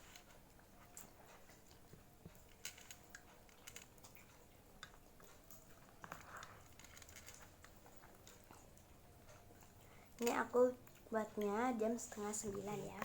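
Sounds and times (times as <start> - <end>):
person chewing: 0.6 - 10.2.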